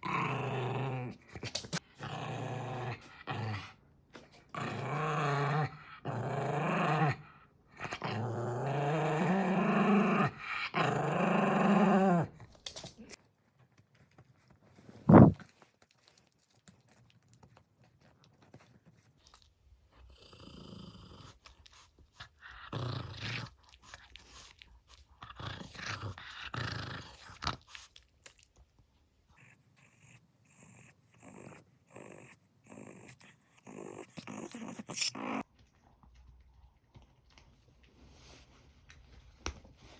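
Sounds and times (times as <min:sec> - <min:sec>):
dog growling: 0:00.0 - 0:03.8, 0:04.4 - 0:12.4, 0:15.0 - 0:15.4, 0:20.0 - 0:27.9, 0:29.4 - 0:35.5.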